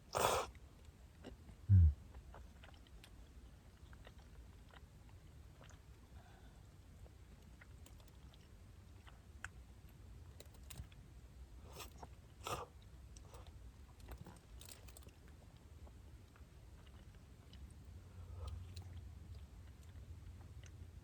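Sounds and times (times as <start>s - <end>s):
person chewing food: 1.2s - 6.2s, 11.7s - 20.8s.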